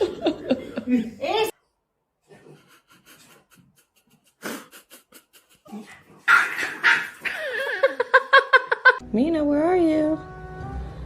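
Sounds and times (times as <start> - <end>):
dog barking: 6.3 - 7.4.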